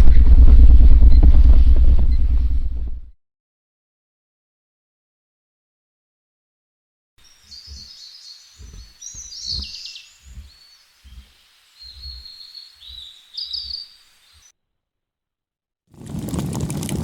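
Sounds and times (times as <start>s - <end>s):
soft low thuds: 0.0s - 3.1s, 7.6s - 13.9s
small birds chirping and trilling: 7.2s - 14.5s.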